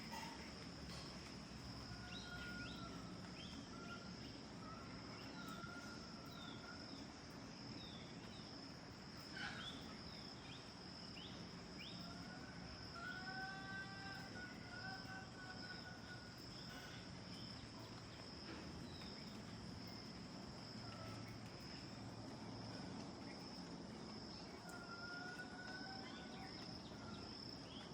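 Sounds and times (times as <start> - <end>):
high-pitched insect trill: 7.8 - 27.9.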